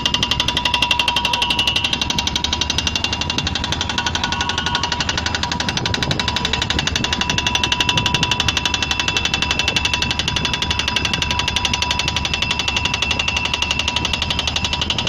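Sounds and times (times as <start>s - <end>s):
high whine: 0.0s - 15.0s
pneumatic drill hammering: 0.0s - 15.0s.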